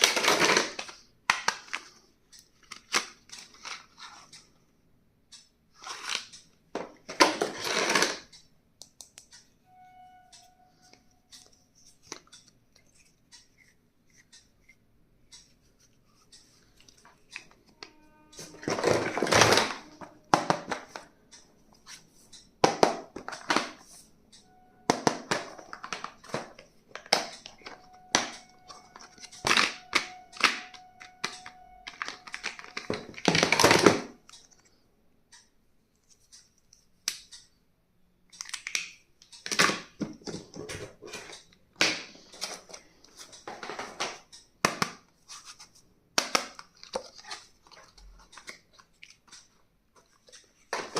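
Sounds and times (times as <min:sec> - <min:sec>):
items clicking and tapping: 0:00.0 - 0:04.6, 0:05.4 - 0:09.5, 0:10.4 - 0:34.8, 0:38.3 - 0:50.9
faint background music: 0:16.9 - 0:34.3.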